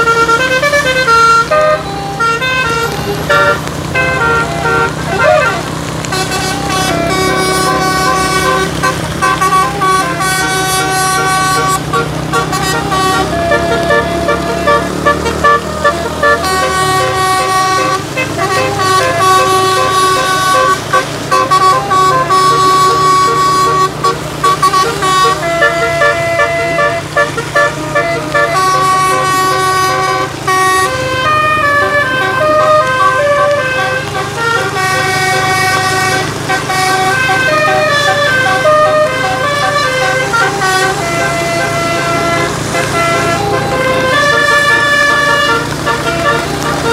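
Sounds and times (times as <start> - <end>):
bus horn playing a tune: 0.0 - 46.9.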